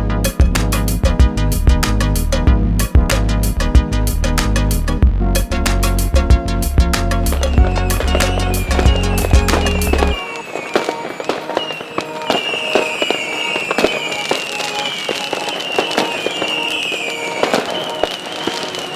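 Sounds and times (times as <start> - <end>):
music with heavy bass beat: 0.0 - 11.4
dense crackling clicks: 5.6 - 18.9
high whistle sliding down: 7.3 - 18.9.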